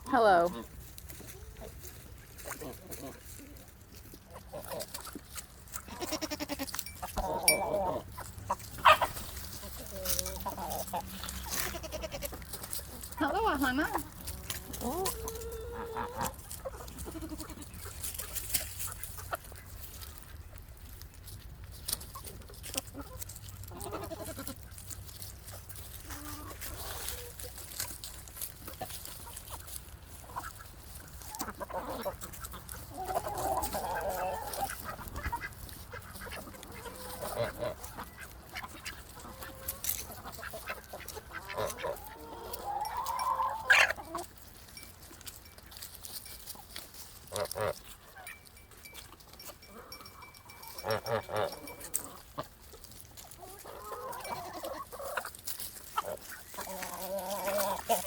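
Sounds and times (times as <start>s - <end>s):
waterfowl honking: 50.7s - 51.8s.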